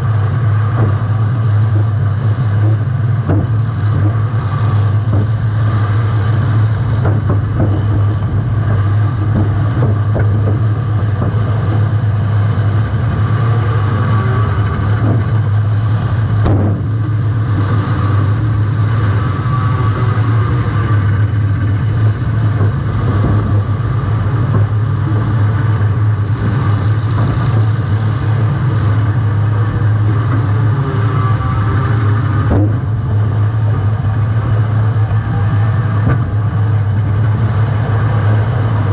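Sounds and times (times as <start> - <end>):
car engine revving: 0.0 - 38.9
cars colliding with a bang: 16.3 - 17.0.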